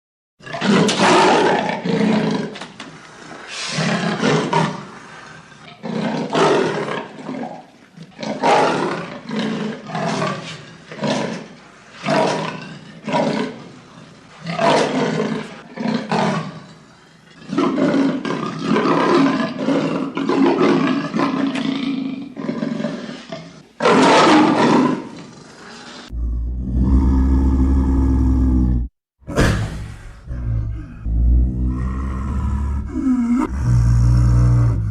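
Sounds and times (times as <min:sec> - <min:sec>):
leopard roaring: 0:00.4 - 0:02.6, 0:17.4 - 0:34.9
low rumble: 0:29.3 - 0:34.1.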